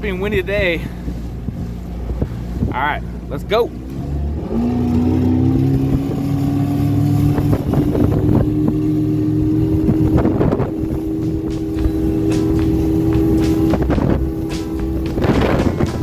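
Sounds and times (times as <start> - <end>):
wind buffeting microphone: 0.0 - 3.4, 4.0 - 16.0
motorboat engine: 0.0 - 16.0
knocks: 11.2 - 16.0.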